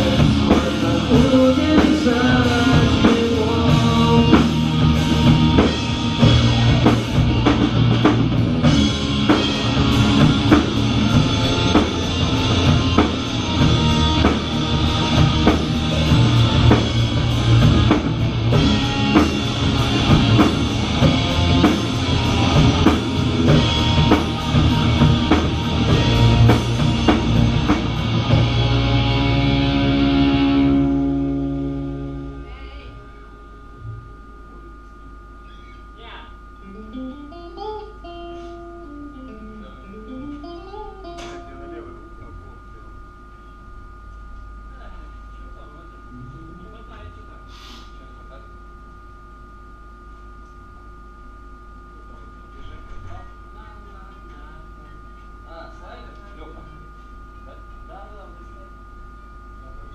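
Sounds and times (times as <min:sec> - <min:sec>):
rock band playing: 0:00.0 - 0:33.6, 0:36.6 - 0:42.6
drum kit beating: 0:00.0 - 0:35.2
ringing guitar notes: 0:00.0 - 0:44.0.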